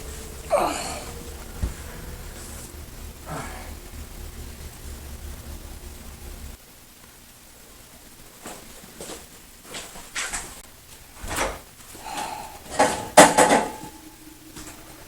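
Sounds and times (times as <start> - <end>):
kitchen knocks and clinks: 12.7 - 13.9
brief ringing tone: 13.4 - 15.0.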